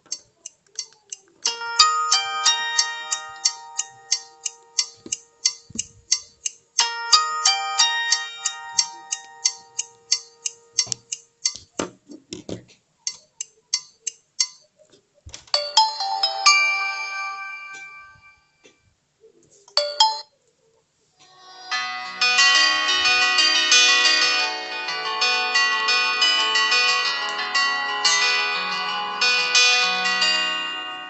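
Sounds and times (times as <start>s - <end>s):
phone ringtone melody: 1.5s - 5.6s, 6.8s - 11.0s, 15.6s - 18.6s, 19.8s - 20.3s, 21.7s - 31.0s.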